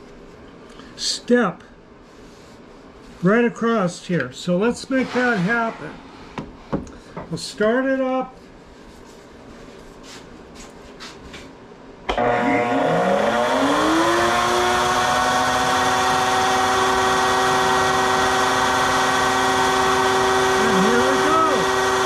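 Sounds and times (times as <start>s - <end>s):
electric motor spinning up and whining: 12.1s - 22.0s.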